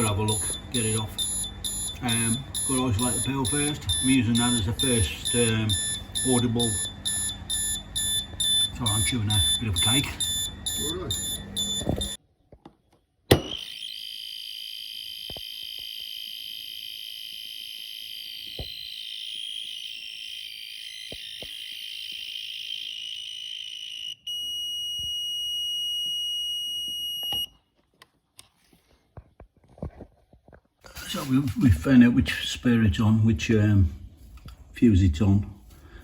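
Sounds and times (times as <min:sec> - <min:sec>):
high-pitched electronic tone: 0:00.0 - 0:12.2, 0:13.4 - 0:27.5.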